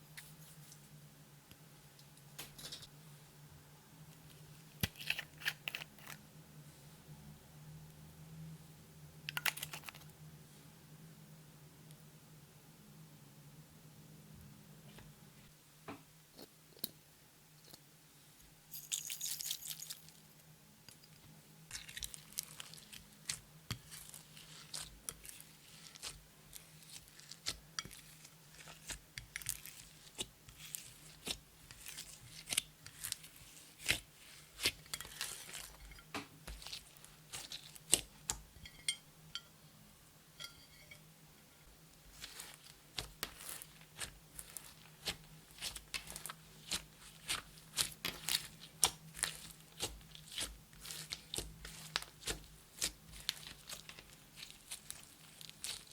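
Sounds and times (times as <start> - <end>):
slime squishing by hand: 21.7 - 38.5, 42.1 - 55.9.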